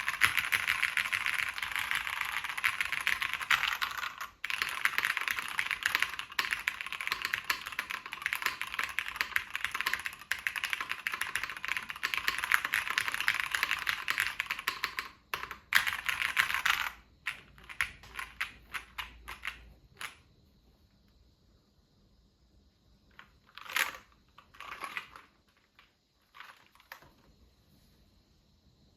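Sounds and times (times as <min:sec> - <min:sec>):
mechanical keyboard typing: 0:00.0 - 0:20.2.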